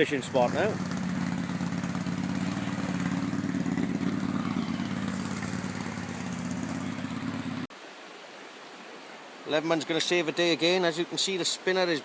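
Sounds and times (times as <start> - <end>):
atv engine running: 0.0 - 7.7.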